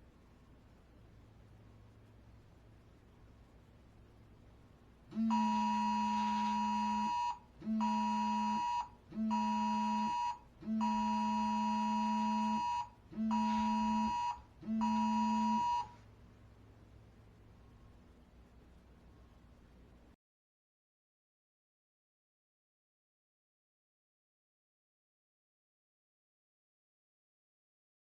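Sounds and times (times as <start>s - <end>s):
phone alert beeps: 5.2s - 16.0s.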